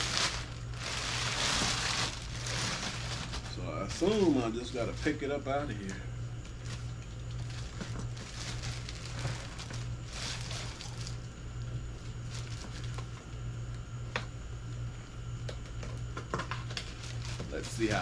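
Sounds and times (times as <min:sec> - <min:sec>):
packaging rustling and scraping: 0:00.0 - 0:05.5, 0:06.6 - 0:11.3, 0:12.0 - 0:13.2, 0:16.3 - 0:18.0
steady low hum: 0:00.0 - 0:18.0.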